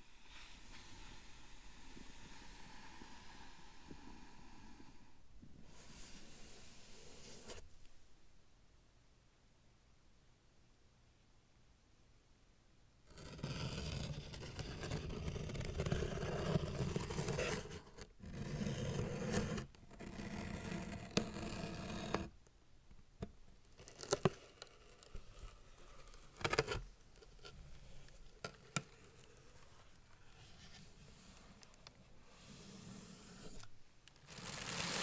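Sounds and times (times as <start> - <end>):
cardboard box tearing and scraping: 34.2 - 35.0.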